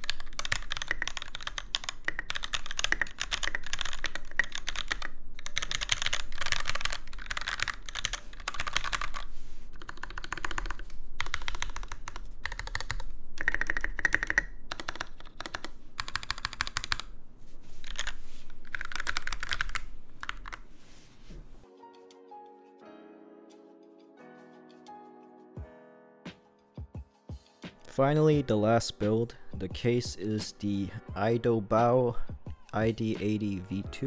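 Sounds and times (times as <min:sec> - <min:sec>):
mechanical keyboard typing: 0:00.0 - 0:17.2, 0:17.8 - 0:20.6.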